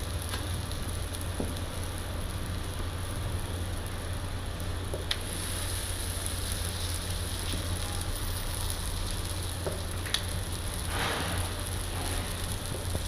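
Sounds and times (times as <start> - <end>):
food sizzling in frying: 0.0 - 13.0.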